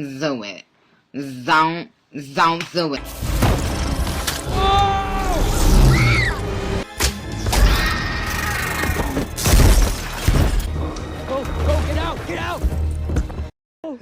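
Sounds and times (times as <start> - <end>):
dramatic film score: 2.6 - 13.5.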